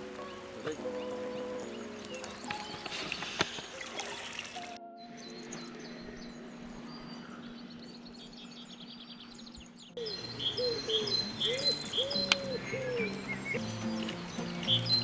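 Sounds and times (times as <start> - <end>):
background music: 0.0 - 6.3, 10.0 - 15.0
small birds chirping: 0.0 - 15.0
steady low hum: 4.8 - 13.6.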